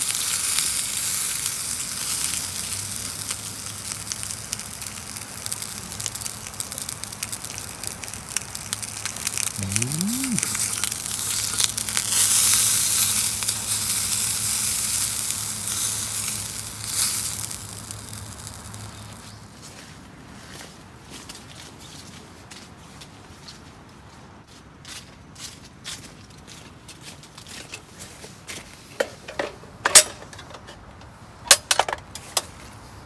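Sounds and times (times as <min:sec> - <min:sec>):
food sizzling in a pan: 0:00.0 - 0:19.3
wood fire crackling: 0:00.0 - 0:19.5.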